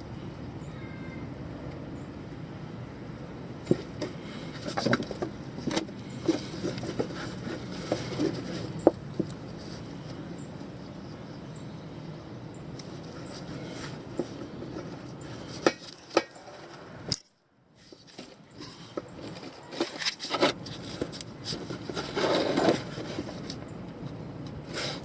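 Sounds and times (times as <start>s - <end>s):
light knocks and rubbing: 3.6s - 10.2s, 17.8s - 23.6s
rustling rub: 3.7s - 10.3s, 12.8s - 16.9s, 17.8s - 23.6s, 24.6s - 25.0s.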